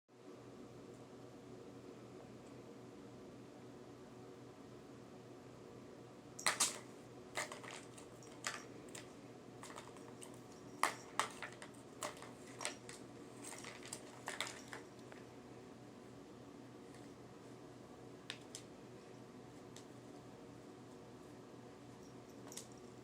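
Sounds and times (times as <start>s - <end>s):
faint room hum: 0.1s - 23.0s
cat playing clicks and taps: 6.4s - 15.3s.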